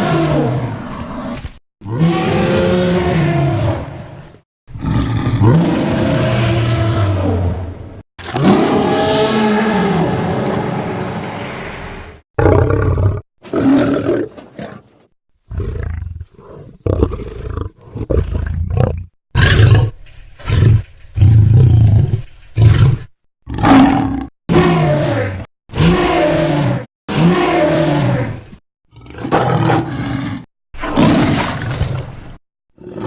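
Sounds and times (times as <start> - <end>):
dinosaur roars and snarls: 0.0 - 14.9, 15.5 - 32.2, 32.8 - 33.0.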